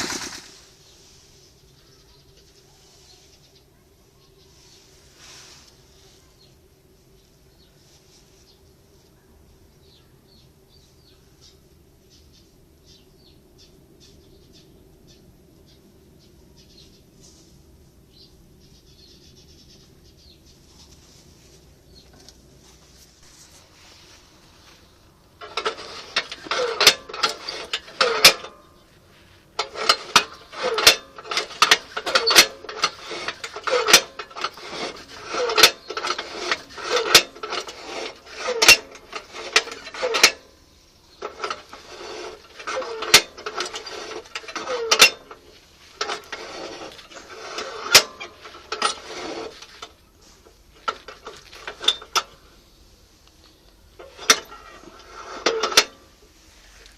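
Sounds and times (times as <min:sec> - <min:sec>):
metal scraping: 0:00.0 - 0:01.4, 0:21.1 - 0:53.3, 0:53.9 - 0:56.9.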